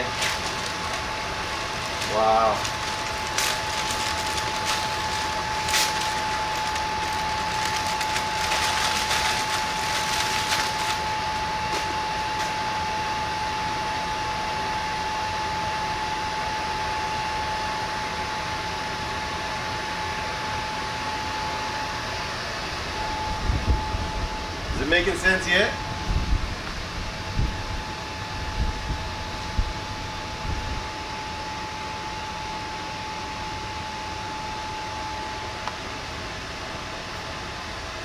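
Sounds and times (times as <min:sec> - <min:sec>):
light crackling: 0:00.0 - 0:11.8
fan whirring: 0:00.0 - 0:15.6, 0:18.6 - 0:38.0.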